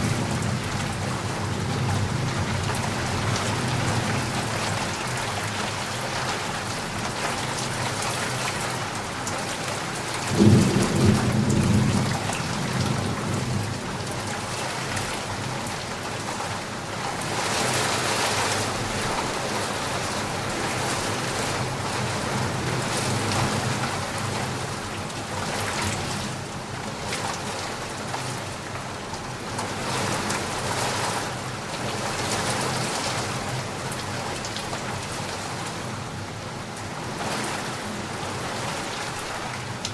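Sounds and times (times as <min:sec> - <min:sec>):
rain falling: 0:00.0 - 0:39.9
thunder rumble: 0:10.3 - 0:13.8.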